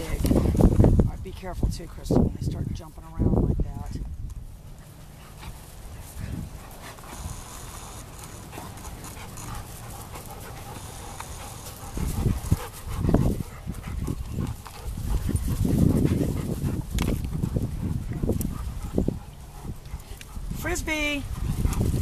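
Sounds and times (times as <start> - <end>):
dog panting: 4.7 - 20.6, 21.2 - 22.0.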